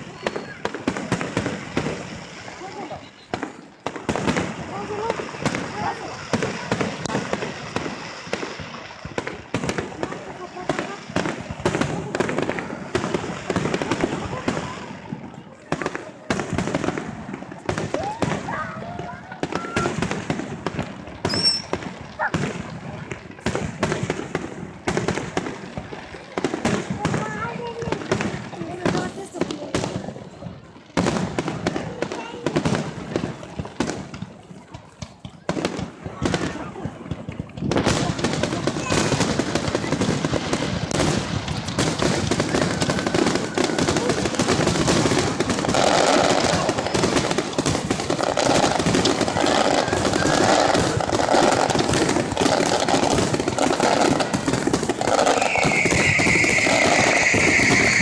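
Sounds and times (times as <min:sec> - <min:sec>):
fireworks banging: 0:00.0 - 0:58.0
fireworks crackling: 0:00.0 - 0:58.0.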